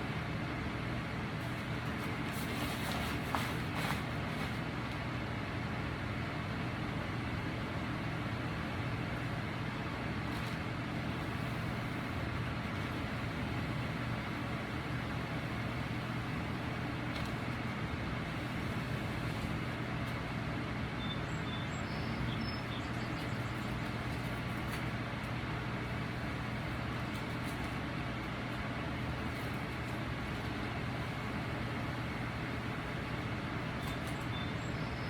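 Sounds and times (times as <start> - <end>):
machine hum: 8.0 - 35.0.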